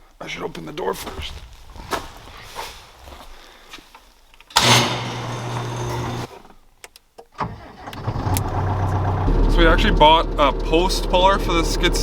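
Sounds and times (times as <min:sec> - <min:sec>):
skid steer engine running: 0:04.6 - 0:06.3.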